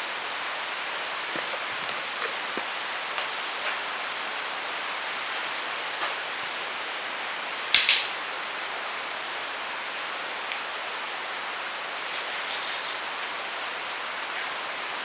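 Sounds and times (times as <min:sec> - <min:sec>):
steady hiss: 0:00.0 - 0:15.0
sharp double crack: 0:07.8 - 0:08.2.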